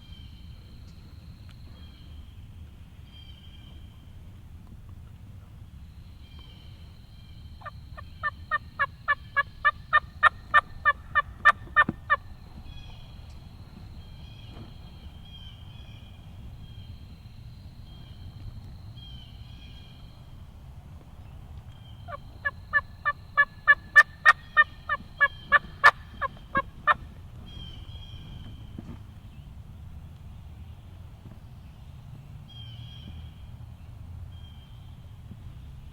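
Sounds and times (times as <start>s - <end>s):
turkey yelping: 8.0s - 12.2s, 22.1s - 27.0s.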